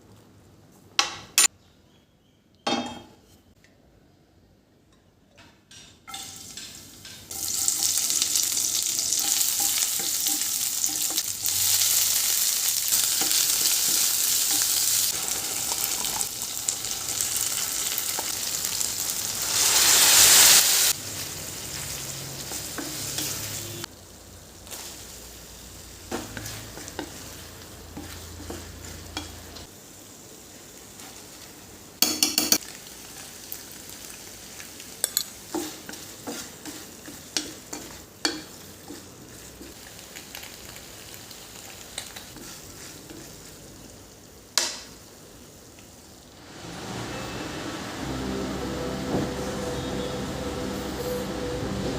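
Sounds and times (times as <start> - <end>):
food sizzling in hot oil: 6.1 - 49.6
spoon stirring in pan: 26.1 - 29.7, 35.0 - 39.9, 41.6 - 43.6.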